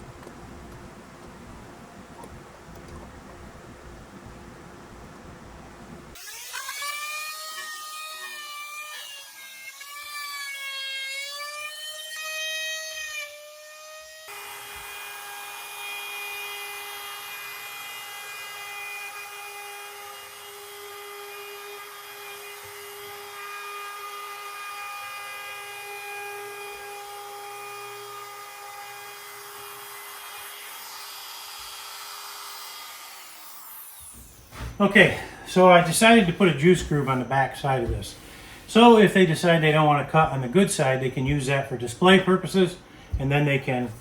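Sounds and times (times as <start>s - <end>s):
router spindle whining: 11.2s - 44.0s
cutting noise: 32.5s - 44.0s.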